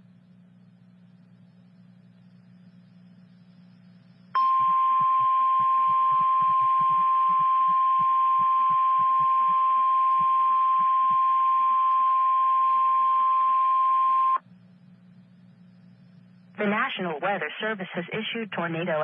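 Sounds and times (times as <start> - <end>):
steady alarm tone: 4.4 - 14.4.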